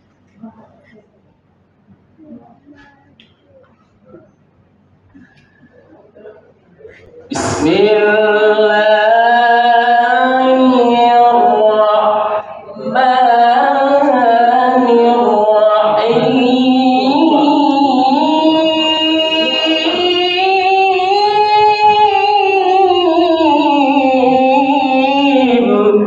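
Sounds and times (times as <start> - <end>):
man reciting melodically: 6.9 - 26.0.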